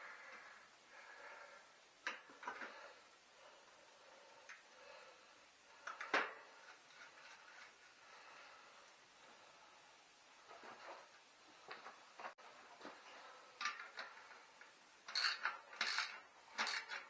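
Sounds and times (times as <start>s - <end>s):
bicycle parts knocking and clinking: 15.1s - 17.0s.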